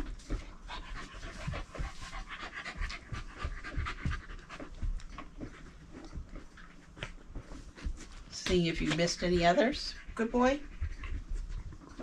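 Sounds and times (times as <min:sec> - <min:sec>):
soft low thumps: 0:00.0 - 0:08.7
dog panting rapidly: 0:00.0 - 0:12.0.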